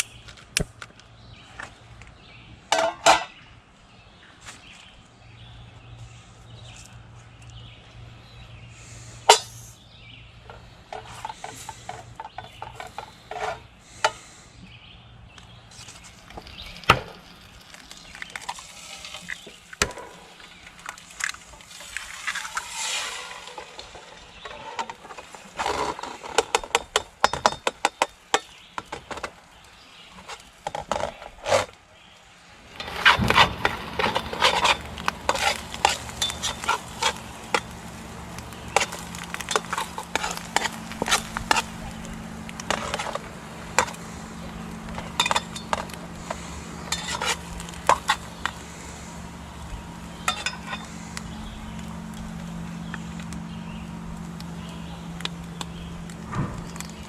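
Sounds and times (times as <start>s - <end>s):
utensil scraping a pan: 10.9s - 14.2s, 21.6s - 26.6s, 32.8s - 48.8s
steady hiss: 16.0s - 25.6s.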